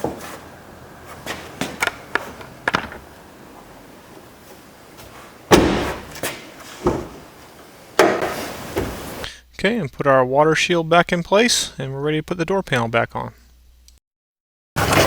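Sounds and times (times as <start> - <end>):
car door latch clunk: 5.5 - 7.2.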